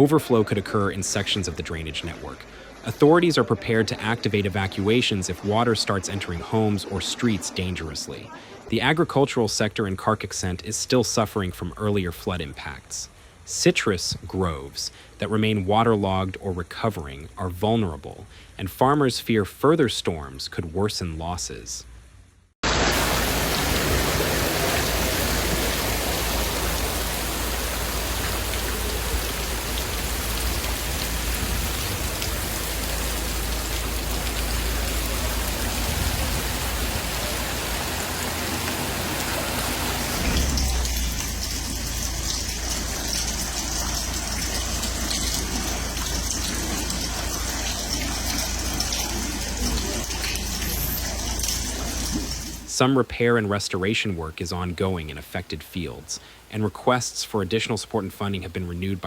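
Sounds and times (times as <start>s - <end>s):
heavy rain falling: 0.0s - 8.7s, 22.6s - 52.8s.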